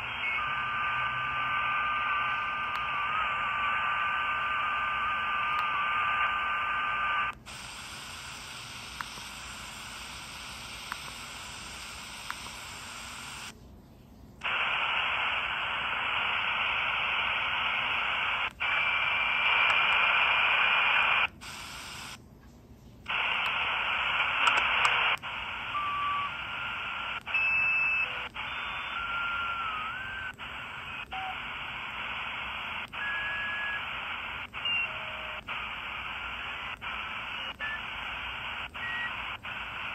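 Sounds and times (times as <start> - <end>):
radio whistles: 0.0 - 13.5, 14.4 - 22.2, 23.1 - 39.9
radio static hiss: 0.0 - 13.6, 14.4 - 22.2, 23.0 - 39.9
clicks: 24.4 - 25.3.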